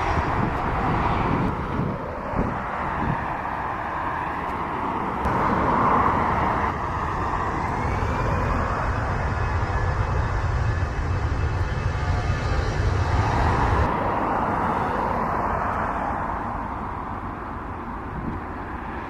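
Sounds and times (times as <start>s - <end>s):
jet engine rush with whine: 0.0s - 19.0s
low rumble: 6.4s - 14.3s.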